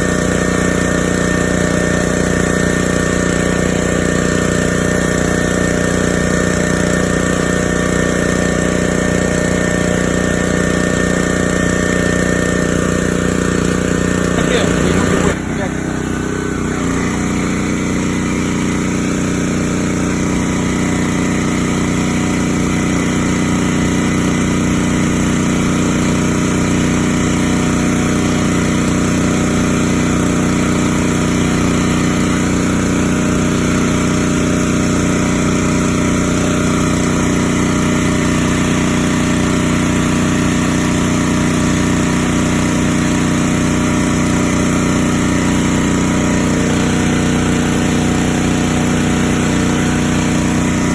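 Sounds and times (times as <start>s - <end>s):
pressure washer engine running: 0.0s - 50.9s.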